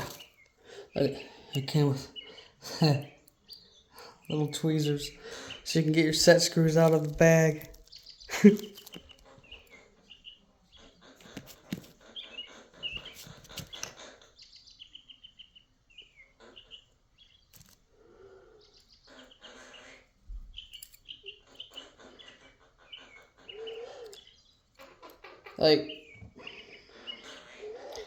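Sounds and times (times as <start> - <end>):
clicks and rustling of small parts: 0.0 - 0.5, 4.2 - 9.6, 11.2 - 12.0, 12.9 - 14.0, 17.5 - 17.9, 20.4 - 21.9
pet bird chirping: 0.0 - 28.0.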